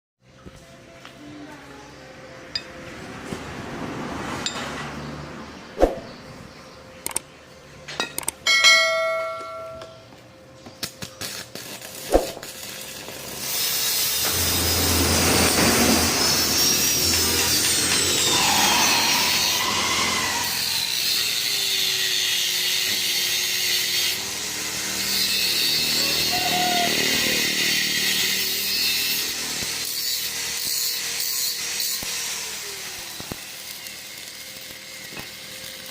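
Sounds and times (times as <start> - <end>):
metallic ring: 4.4 - 4.8, 8.0 - 10.1
power tool running under load: 12.5 - 35.9.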